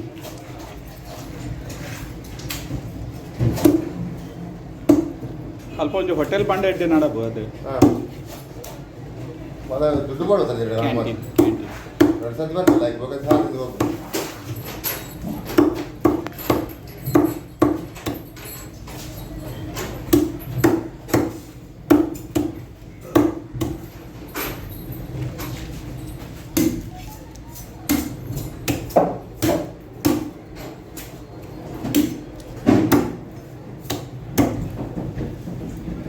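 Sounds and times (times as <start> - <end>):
knife chopping fish on wood: 11.4 - 14.0, 20.1 - 23.8, 26.6 - 26.9, 27.9 - 30.4, 31.9 - 34.8.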